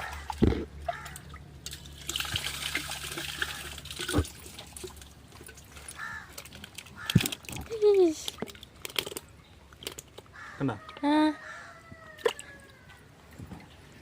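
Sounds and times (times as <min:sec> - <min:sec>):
water trickling and splashing: 0:00.0 - 0:11.0, 0:11.9 - 0:14.0.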